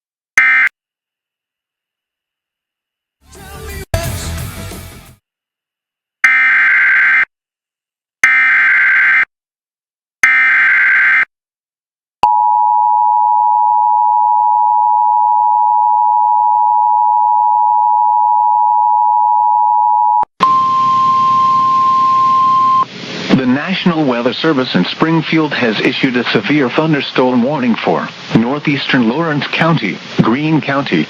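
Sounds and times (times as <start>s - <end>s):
single steady tone: 12.2s - 22.9s
two-tone attention signal: 19.6s - 22.8s
radio hiss: 22.6s - 31.0s.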